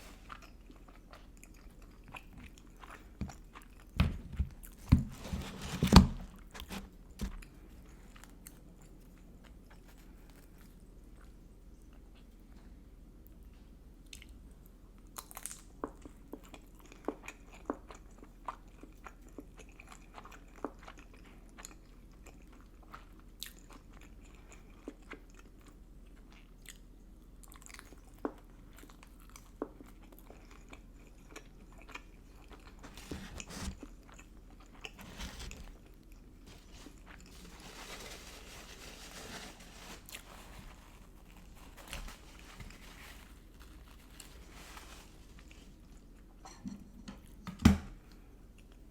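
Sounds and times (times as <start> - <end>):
person chewing crunchy food: 0.0 - 5.0, 27.5 - 37.5.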